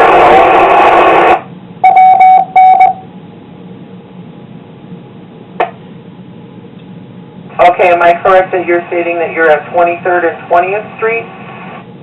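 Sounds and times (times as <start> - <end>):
radio static hiss: 0.0 - 1.5, 7.5 - 11.9
short radio beeps: 1.8 - 3.0.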